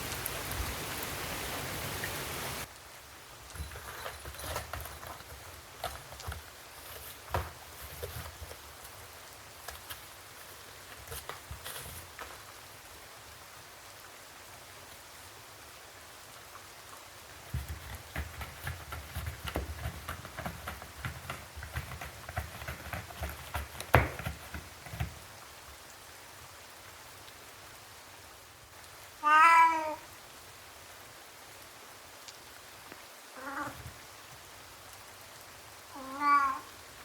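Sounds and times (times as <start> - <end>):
steady rain hiss: 0.0 - 37.0
soft taps and thumps: 3.5 - 12.5, 17.4 - 25.3
cat meowing: 29.2 - 30.0, 33.4 - 33.9, 35.9 - 36.7.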